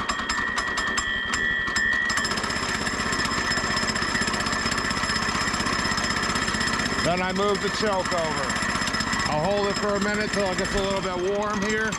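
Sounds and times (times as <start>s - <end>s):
high whine: 0.0s - 3.1s
small gasoline engine running: 0.0s - 11.9s.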